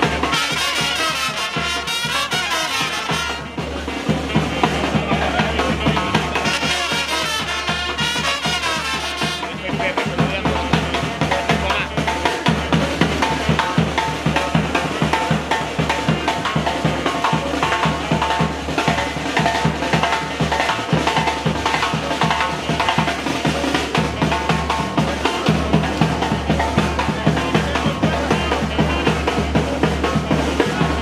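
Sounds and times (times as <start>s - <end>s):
held horn notes: 0.0s - 4.0s, 5.4s - 9.7s
bass drum and snare beat: 0.0s - 31.0s.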